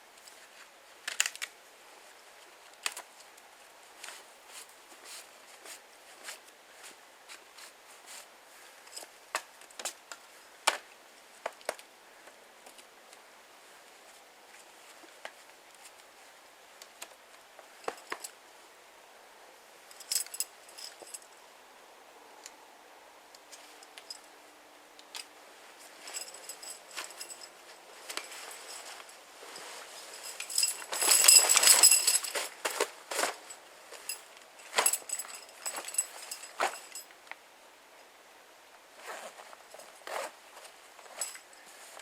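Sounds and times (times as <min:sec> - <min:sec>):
burst of rattling and clinking: 0:30.2 - 0:32.5
small objects clicking and clinking: 0:30.2 - 0:37.0.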